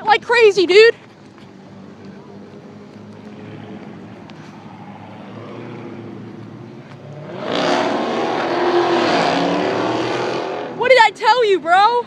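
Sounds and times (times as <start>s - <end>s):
car engine revving hard: 7.1s - 10.8s.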